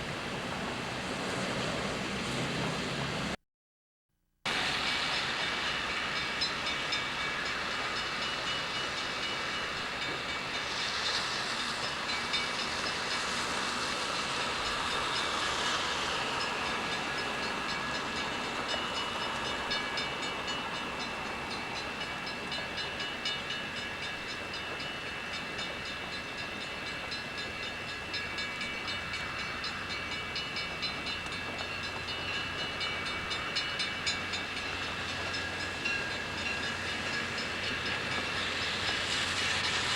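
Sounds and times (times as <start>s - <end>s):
train running on tracks: 0.0s - 3.4s, 4.5s - 39.9s.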